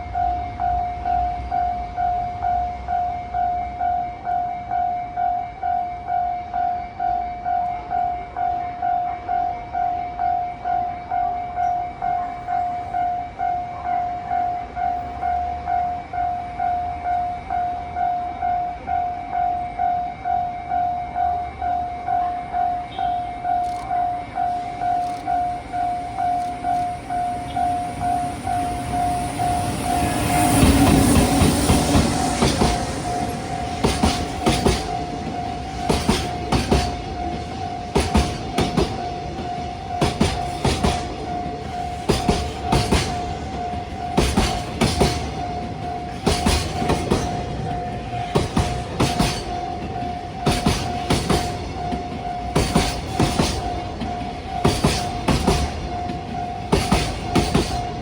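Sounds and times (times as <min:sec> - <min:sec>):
crossing warning bell ringing: 0:00.0 - 0:58.0
heavy train running noise: 0:00.0 - 0:58.0
wheels clacking over rail joints: 0:22.5 - 0:58.0.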